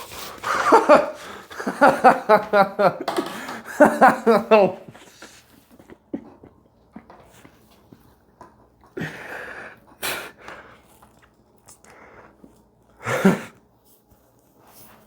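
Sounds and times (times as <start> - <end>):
person breathing out hard: 9.0 - 10.7.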